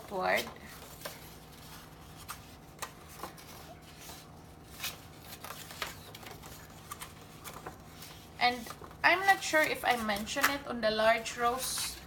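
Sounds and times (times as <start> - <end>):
paper rustling and crinkling: 0.0 - 12.0.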